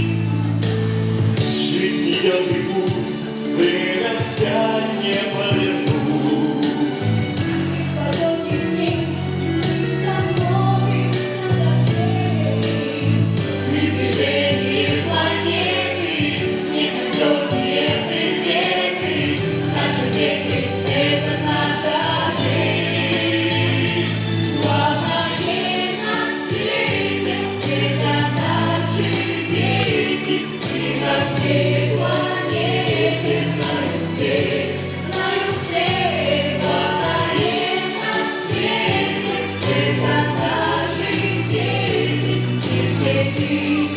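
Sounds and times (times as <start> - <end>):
instrumental accompaniment with beat: 0.0 - 43.9
vocal ensemble singing: 0.0 - 43.9.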